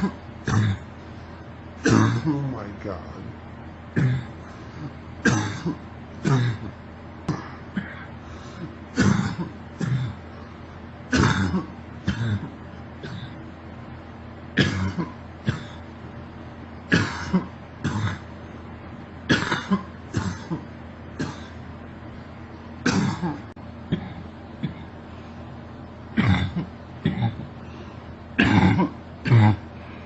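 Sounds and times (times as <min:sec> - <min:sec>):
girl coughing: 0:01.9 - 0:02.4, 0:05.2 - 0:06.7, 0:09.0 - 0:10.2, 0:14.6 - 0:15.8, 0:16.9 - 0:18.3, 0:19.3 - 0:21.6, 0:22.8 - 0:24.9, 0:28.4 - 0:29.6.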